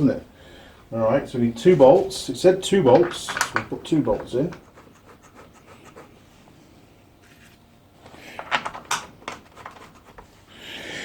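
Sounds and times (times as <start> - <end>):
metal parts clicking: 2.9 - 4.6.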